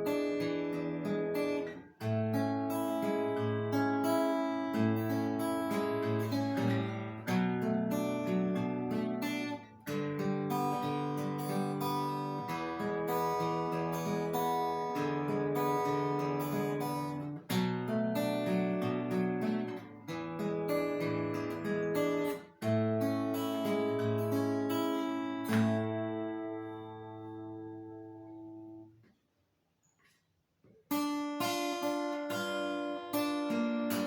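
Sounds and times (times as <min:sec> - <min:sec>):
plucked guitar melody and strummed chords: 0:00.0 - 0:29.0, 0:30.9 - 0:34.0.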